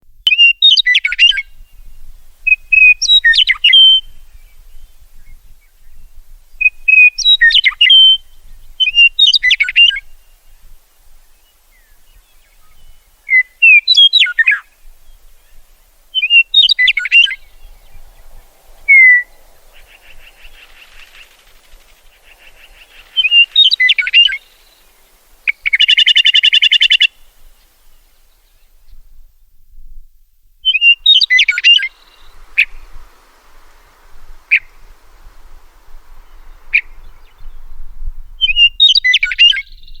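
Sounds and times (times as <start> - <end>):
bird singing fluty whistles: 0.2 - 10.6, 11.3 - 27.3, 30.6 - 33.0, 34.4 - 34.8, 36.1 - 40.0
sharp bird call notes: 16.2 - 27.2.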